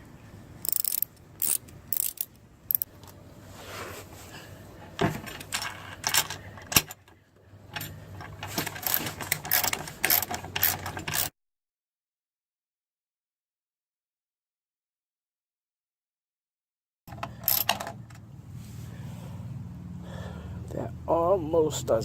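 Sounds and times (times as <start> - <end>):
socket ratchet clicking: 0.6 - 2.9, 8.8 - 11.3.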